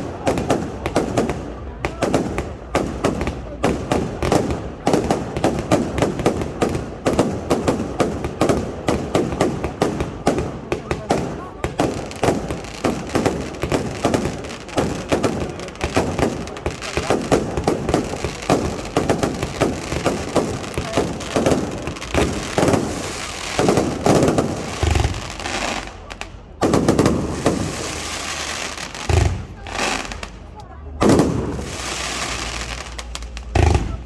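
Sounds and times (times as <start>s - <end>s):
heavy firework booms: 0.0s - 25.9s, 26.5s - 30.3s, 30.9s - 34.0s
fireworks bangs and crackles: 0.0s - 34.0s.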